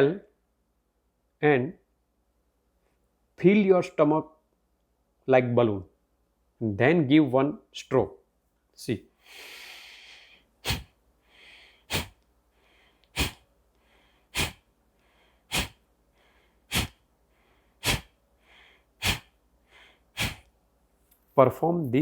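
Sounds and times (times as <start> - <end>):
man inhaling slowly: 9.2 - 20.5
man exhaling forcefully: 9.3 - 12.2, 13.1 - 13.4, 14.3 - 14.6, 15.5 - 15.8, 16.7 - 17.0, 17.8 - 20.5.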